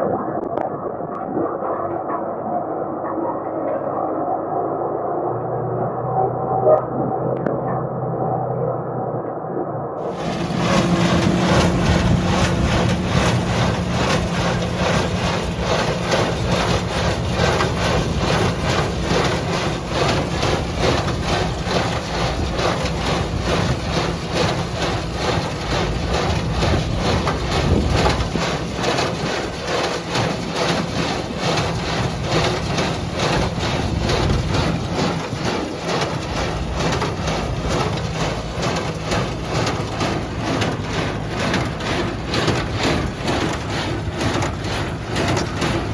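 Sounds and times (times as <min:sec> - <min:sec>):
tractor engine under load: 0:10.0 - 0:45.9.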